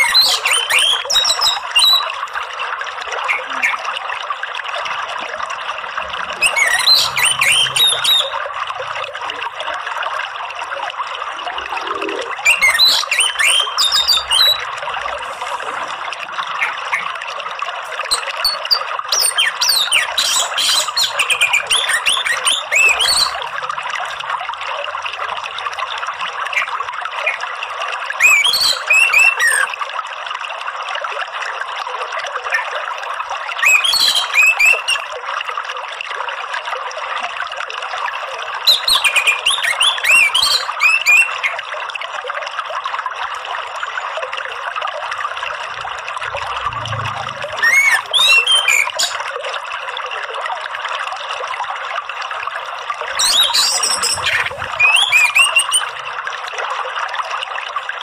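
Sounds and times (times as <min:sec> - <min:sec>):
thrush singing whistled phrases: 0:00.0 - 0:02.2, 0:06.4 - 0:08.4, 0:12.4 - 0:14.7, 0:18.0 - 0:23.5, 0:28.2 - 0:29.7, 0:33.6 - 0:35.0, 0:38.7 - 0:41.6, 0:45.7 - 0:49.2, 0:53.2 - 0:56.0
trickling water: 0:00.0 - 0:58.0.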